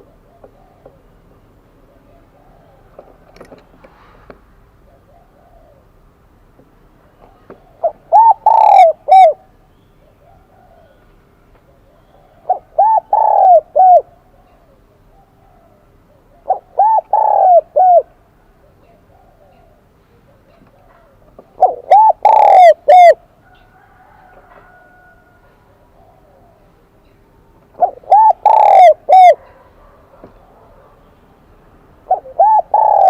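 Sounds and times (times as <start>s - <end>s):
dove cooing: 0.0s - 3.6s, 4.8s - 6.0s, 7.3s - 27.0s, 27.6s - 31.2s, 32.0s - 33.0s.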